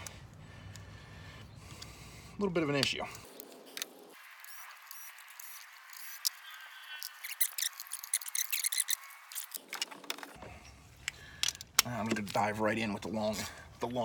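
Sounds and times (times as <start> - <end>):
hand tools clicking on engine: 11.0 - 12.5.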